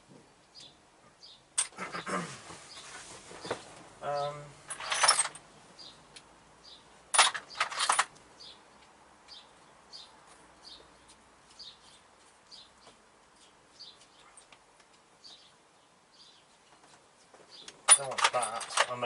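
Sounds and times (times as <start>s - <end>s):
bird chirping: 0.5s - 4.5s, 5.8s - 14.6s, 15.2s - 17.8s
small metal parts clattering: 4.7s - 5.4s, 7.1s - 8.1s, 17.8s - 19.0s.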